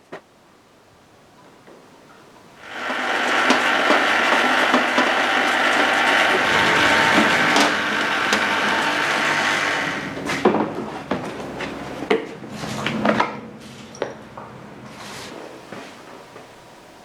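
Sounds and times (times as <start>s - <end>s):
small motorised tool running: 2.6s - 10.5s.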